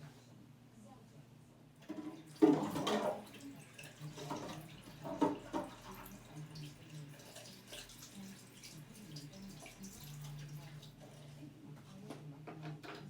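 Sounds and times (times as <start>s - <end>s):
water running into a sink: 1.8s - 11.0s.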